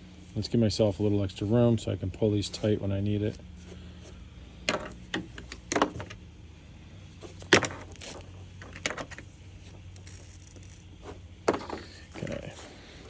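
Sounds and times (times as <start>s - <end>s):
straps pulled through buckles: 10.0s - 12.6s.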